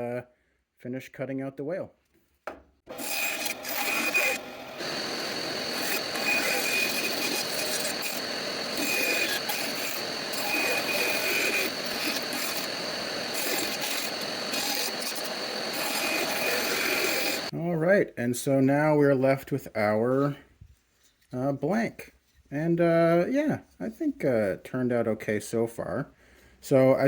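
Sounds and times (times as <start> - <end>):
bandsaw cutting wood: 2.9 - 17.5
high whine of saw blade: 2.9 - 17.5.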